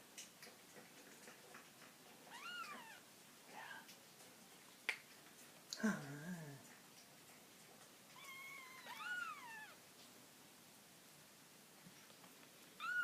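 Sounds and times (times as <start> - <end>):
kitten mewing: 2.3 - 3.0, 8.2 - 9.8.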